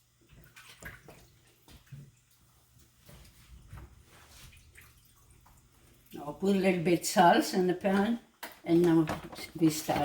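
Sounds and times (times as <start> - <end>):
water boiling in a pot: 0.0 - 10.0
small splashes and knocks: 0.2 - 6.2.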